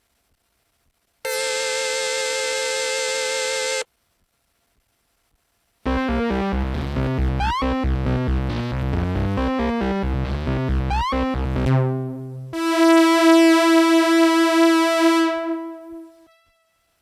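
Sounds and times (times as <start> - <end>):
bright sustained synth note: 1.3 - 3.8, 12.6 - 16.3
synthesizer pitch sweep: 1.3 - 3.8, 5.9 - 16.2
synthesizer bass sequence: 5.9 - 16.1.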